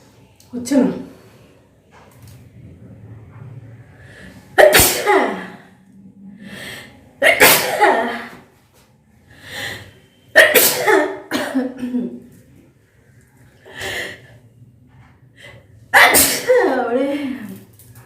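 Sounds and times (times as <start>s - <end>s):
woman sneezing: 4.6s - 5.6s, 7.2s - 8.4s, 10.4s - 12.0s, 16.0s - 16.9s.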